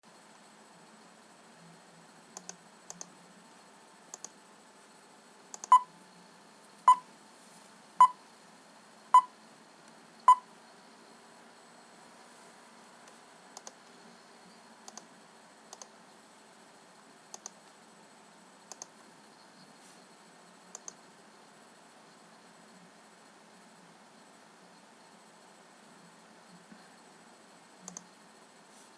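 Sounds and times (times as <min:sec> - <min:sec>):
mouse clicks: 0:02.4 - 0:03.1, 0:04.1 - 0:04.4, 0:05.5 - 0:05.8, 0:13.1 - 0:14.0, 0:14.9 - 0:15.1, 0:15.7 - 0:15.9, 0:17.3 - 0:17.6, 0:18.7 - 0:18.9, 0:20.7 - 0:21.0, 0:27.9 - 0:28.1.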